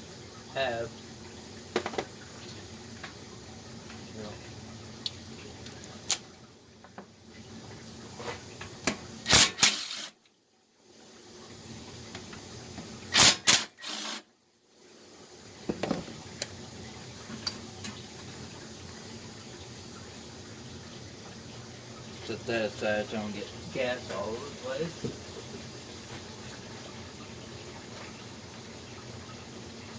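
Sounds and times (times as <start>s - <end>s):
short loud noisy bursts: 9.3s - 10.1s, 13.1s - 14.2s.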